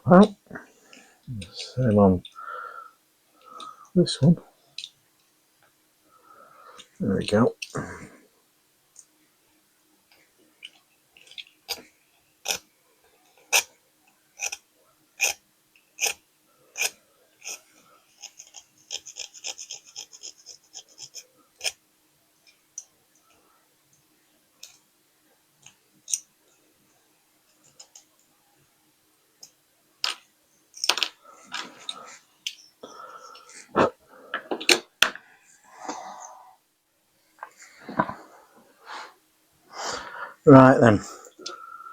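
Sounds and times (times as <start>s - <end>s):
rasping strokes: 16.8s - 21.8s.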